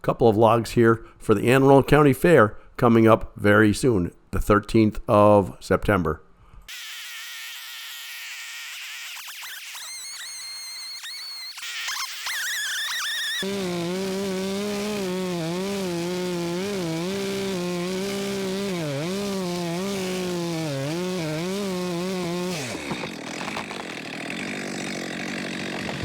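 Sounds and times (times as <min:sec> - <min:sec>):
chainsaw running: 0:06.7 - 0:26.0.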